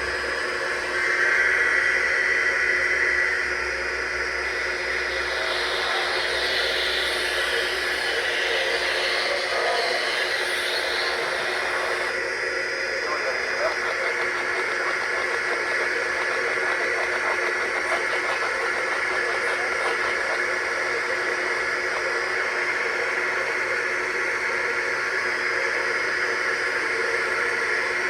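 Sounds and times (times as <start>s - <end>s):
radio static hiss: 4.5s - 12.2s, 12.8s - 23.6s
faint unintelligible voice: 12.9s - 23.4s.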